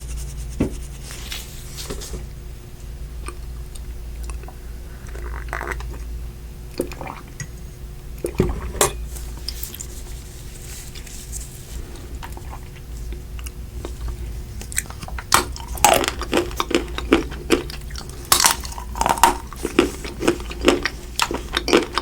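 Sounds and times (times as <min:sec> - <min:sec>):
low hum: 0:00.0 - 0:22.0
wet squishy mouth sounds: 0:03.2 - 0:06.1, 0:11.8 - 0:22.0.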